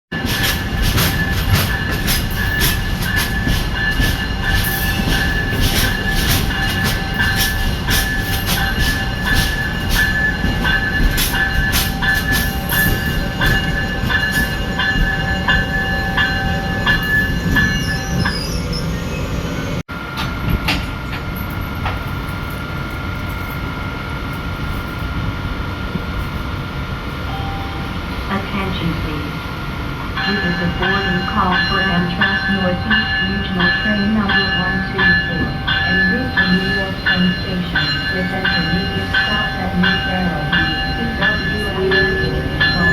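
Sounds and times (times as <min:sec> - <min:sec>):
wheels clicking over rail joints: 0:00.2 - 0:17.7
train wheels squealing: 0:00.2 - 0:19.8
low steady tone: 0:27.3 - 0:29.0.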